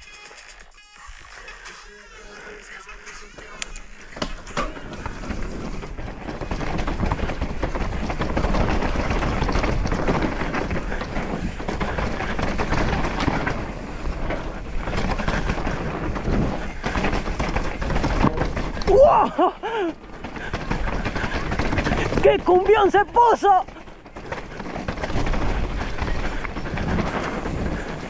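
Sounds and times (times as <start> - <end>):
bike tyres on dirt trail: 1.1 - 28.0
bike clattering over rocks: 3.4 - 28.0.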